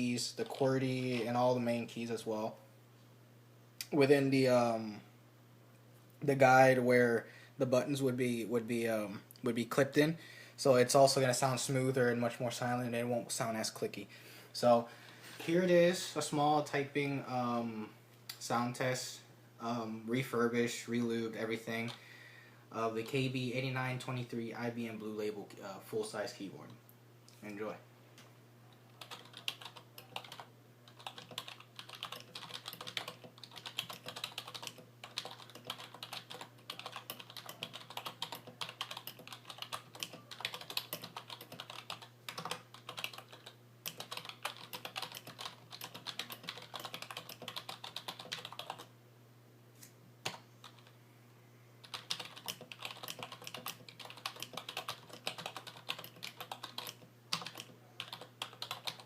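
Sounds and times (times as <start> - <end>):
typing on a membrane keyboard: 29.0 - 48.9, 51.8 - 59.0.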